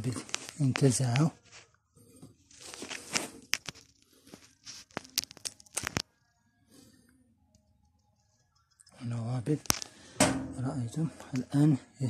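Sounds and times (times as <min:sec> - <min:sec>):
parts scraping and rustling: 0:00.0 - 0:06.0.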